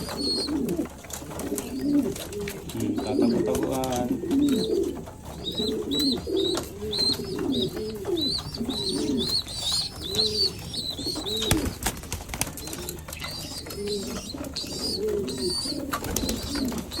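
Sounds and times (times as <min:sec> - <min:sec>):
chirping bird calls: 0:00.0 - 0:17.0
pigeons cooing: 0:00.0 - 0:17.0.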